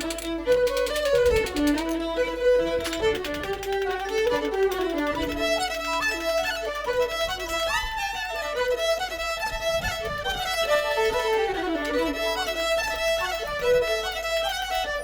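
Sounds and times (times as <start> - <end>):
fiddle dance tune: 0.0 - 15.0.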